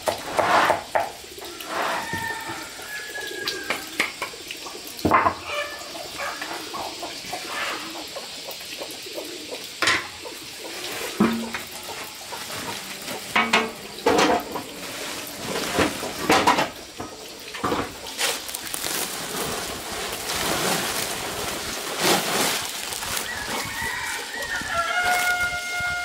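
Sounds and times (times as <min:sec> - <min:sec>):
rooster crowing: 0:01.6 - 0:04.0, 0:23.0 - 0:26.0
water splashing: 0:10.3 - 0:26.0.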